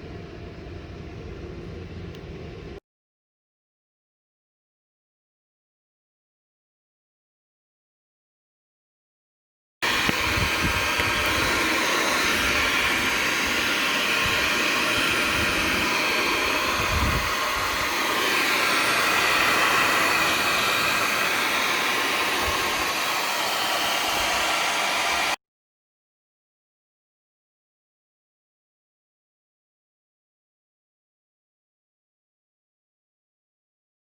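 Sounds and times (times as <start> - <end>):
hot-air blower rushing: 9.8 - 25.4.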